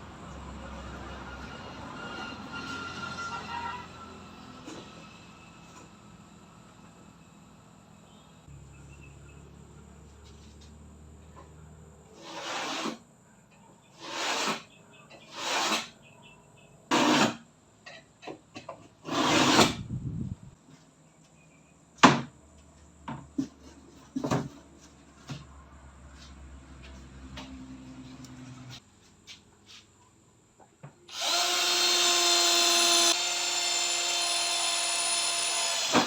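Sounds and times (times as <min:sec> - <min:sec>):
wood rasping scrapes: 0:12.2 - 0:13.0, 0:19.0 - 0:19.8.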